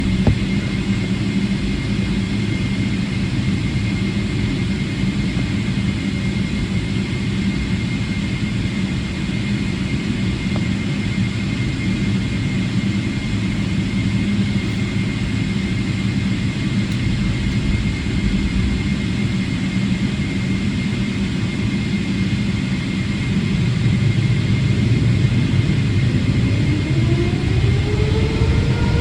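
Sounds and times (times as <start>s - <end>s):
jet engines rumbling: 0.0s - 29.0s.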